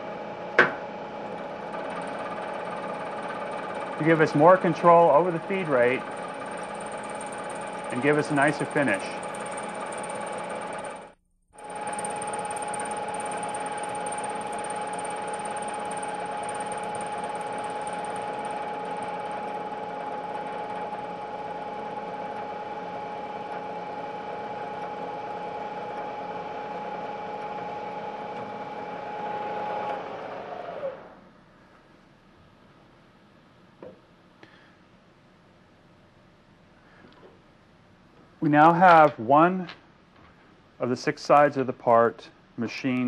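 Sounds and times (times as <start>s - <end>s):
milling machine whining: 0.0s - 31.2s.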